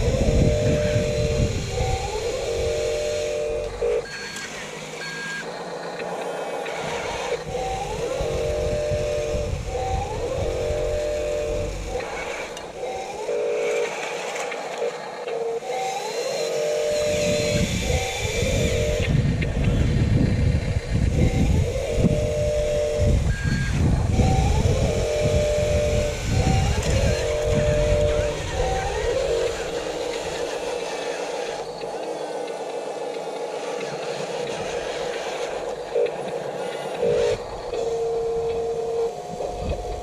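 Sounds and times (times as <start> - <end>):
small electric motors whining: 0.0 - 40.0
low rumbling noise: 17.0 - 32.0, 34.5 - 40.0.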